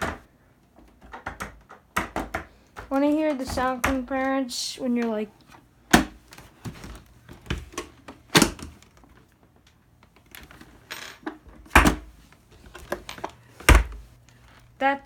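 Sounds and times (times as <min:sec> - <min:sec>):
plastic parts knocking: 0:00.8 - 0:04.1, 0:11.2 - 0:12.1, 0:12.7 - 0:14.0.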